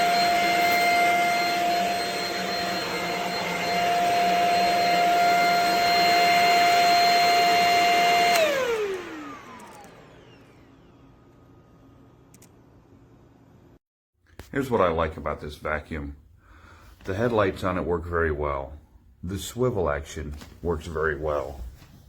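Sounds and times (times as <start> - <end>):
vacuum motor winding down: 0.0 - 11.6
vacuum cleaner whining: 0.0 - 12.2.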